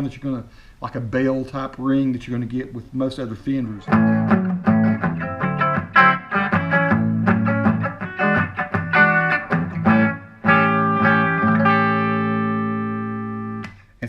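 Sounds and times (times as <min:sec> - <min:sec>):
electric guitar picked notes: 0:03.8 - 0:13.7
electric guitar chord ringing: 0:03.9 - 0:13.7.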